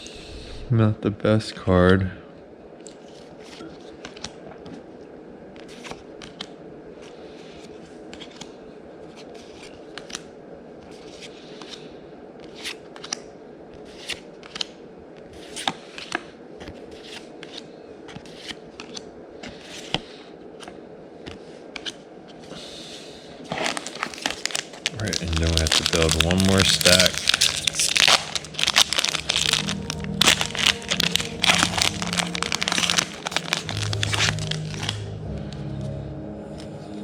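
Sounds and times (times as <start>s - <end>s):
steady low hum: 0.0s - 37.0s
trading cards clicking and snapping: 9.1s - 10.3s, 12.4s - 13.2s, 13.9s - 14.8s.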